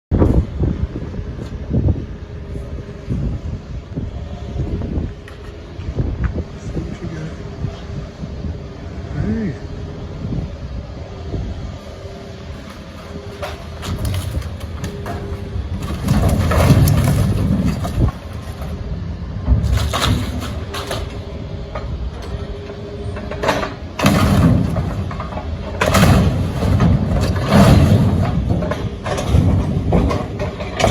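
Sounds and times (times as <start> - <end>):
heavy machinery running: 0.1 - 30.9
debris crashing and scraping: 12.6 - 18.9, 19.5 - 30.9.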